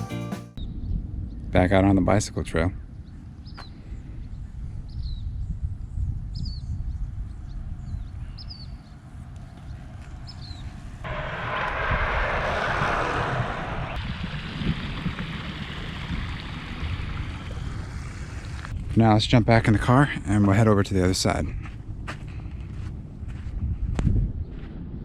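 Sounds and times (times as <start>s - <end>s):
wind rumbling on microphone: 0.6s - 25.0s
bird chirping: 2.8s - 10.8s.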